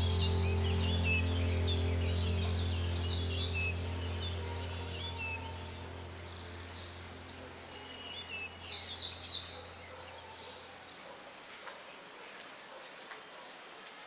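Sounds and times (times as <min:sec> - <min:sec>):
high downward-sweeping bird call: 0:00.0 - 0:10.7
steady low hum: 0:00.0 - 0:11.0
bird chirps: 0:00.0 - 0:11.2.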